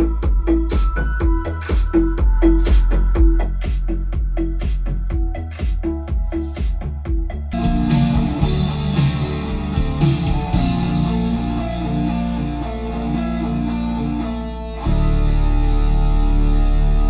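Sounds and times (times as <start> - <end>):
sparse drum beat: 0.2 - 11.6
heavy guitar rock music: 7.5 - 17.0.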